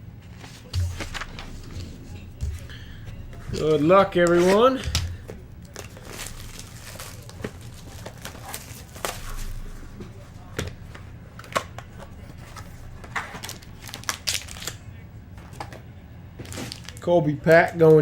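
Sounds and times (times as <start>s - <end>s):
steady low hum: 0.0s - 17.0s
packaging torn and crinkled: 5.7s - 9.6s, 12.9s - 14.8s, 16.4s - 17.0s.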